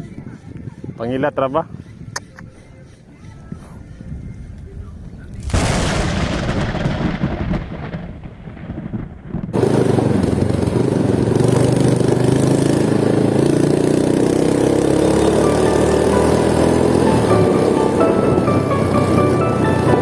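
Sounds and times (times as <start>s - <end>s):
thunder crack and rolling: 5.3s - 10.6s
loud sound with held pitches: 14.6s - 20.0s.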